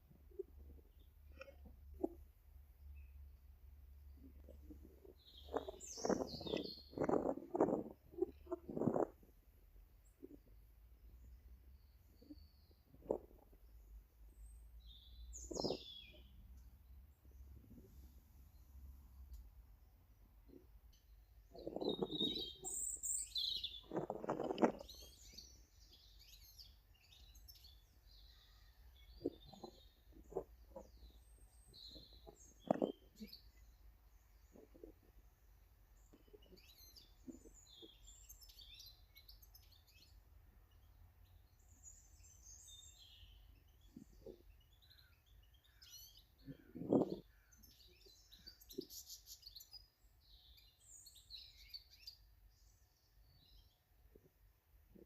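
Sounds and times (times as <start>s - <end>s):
small birds chirping: 0.0s - 55.0s
low rustling close to microphone: 4.1s - 16.2s, 21.4s - 26.4s, 29.0s - 38.1s, 45.8s - 47.4s.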